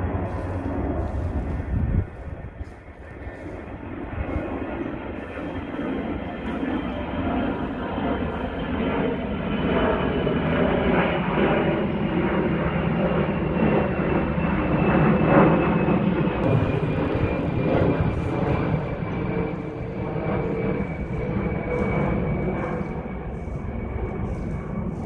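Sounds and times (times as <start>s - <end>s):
airplane engine rumble: 0.0s - 25.0s
thin high whine: 16.4s - 25.0s.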